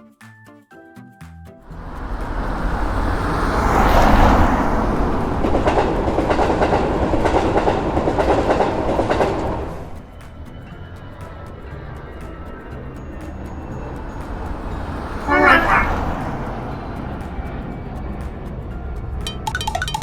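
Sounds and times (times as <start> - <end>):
wheels clattering over rails: 1.7 - 17.5
train rumble: 1.7 - 19.4.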